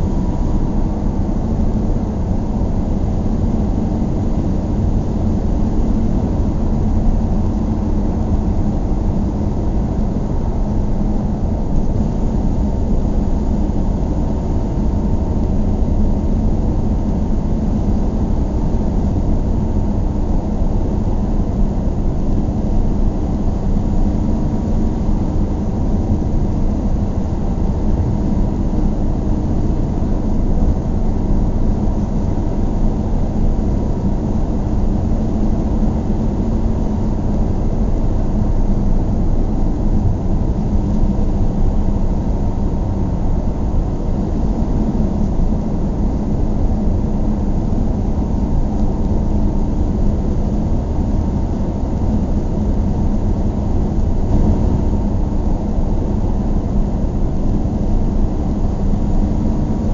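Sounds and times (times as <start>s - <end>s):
faint steady hum: 0.0s - 59.9s
car engine and road rumble: 52.9s - 57.8s.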